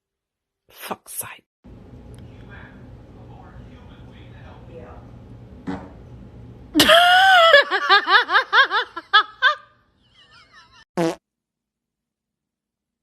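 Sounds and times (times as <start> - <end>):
squeaky fart sound effect: 11.0 - 11.2.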